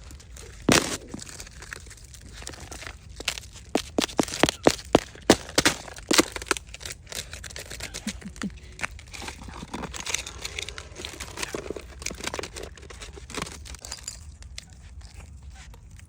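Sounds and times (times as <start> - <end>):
footsteps crunching on frozen snow: 0.1 - 11.8.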